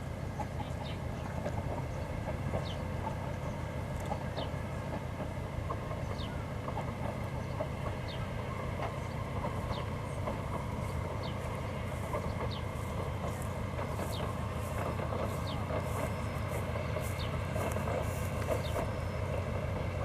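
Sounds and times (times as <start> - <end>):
diesel locomotive idling: 0.0 - 20.0.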